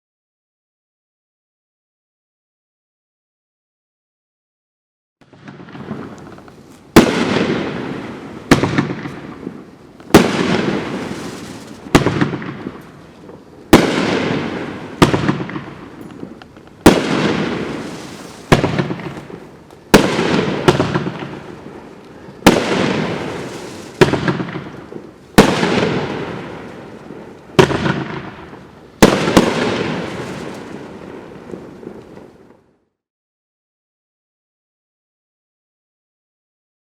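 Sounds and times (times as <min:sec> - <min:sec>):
firework shells bursting: 0:05.3 - 0:32.5.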